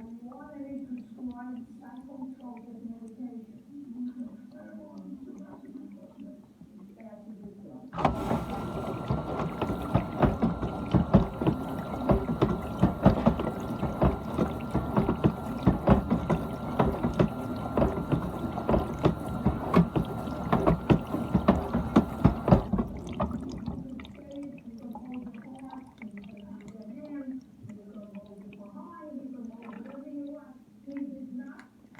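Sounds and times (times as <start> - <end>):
dishwasher running: 8.0 - 25.9
water splashing inside dishwasher: 8.0 - 30.4.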